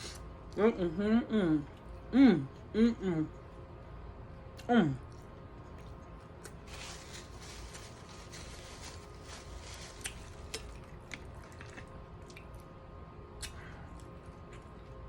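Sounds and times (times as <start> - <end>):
wet chewing and lip smacking: 4.6 - 6.7, 10.0 - 12.8, 13.4 - 15.0.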